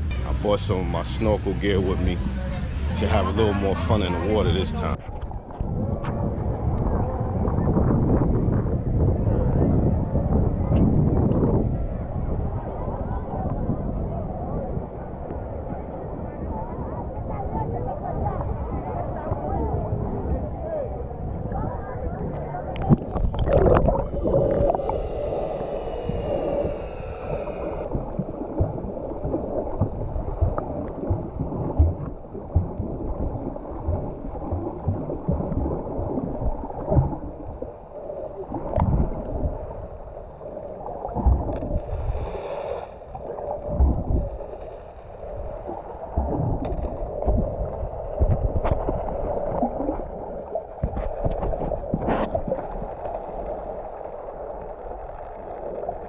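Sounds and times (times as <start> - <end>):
sea water sloshing and gurgling: 0.0 - 56.0
low thumps and knocks: 27.9 - 37.3, 46.2 - 49.0.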